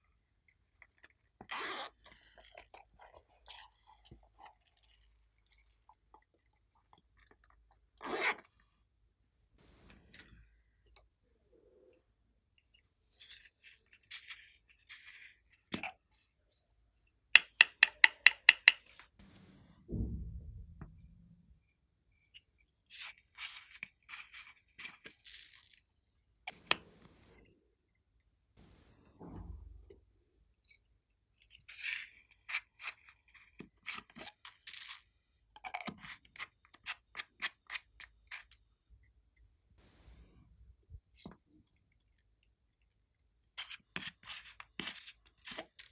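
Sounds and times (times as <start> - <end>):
knock: 17.4 - 18.8.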